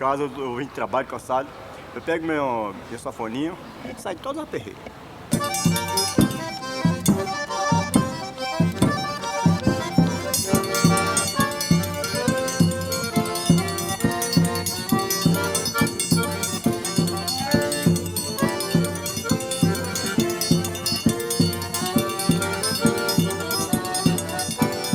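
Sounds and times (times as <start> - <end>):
accordion folk music: 5.0 - 24.9
high rattling percussion: 5.3 - 24.9
percussive beat: 5.3 - 24.9.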